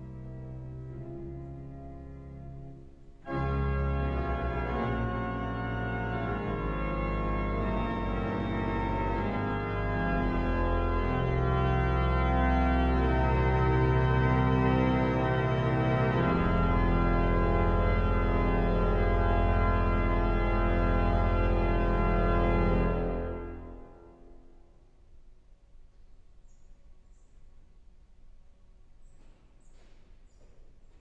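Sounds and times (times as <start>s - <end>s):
pipe organ chords: 0.0s - 24.6s.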